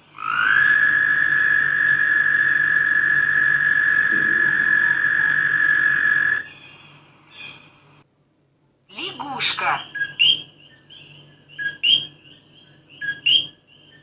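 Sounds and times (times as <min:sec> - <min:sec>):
frog trilling: 0:00.0 - 0:06.7, 0:09.0 - 0:14.0.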